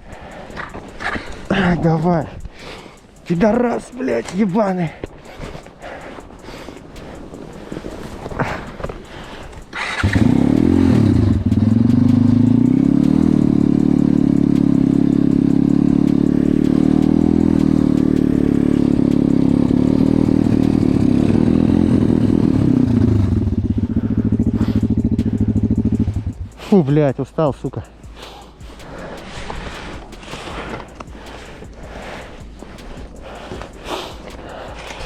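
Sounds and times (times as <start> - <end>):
motorbike engine revving: 7.0 - 26.8, 27.7 - 35.0.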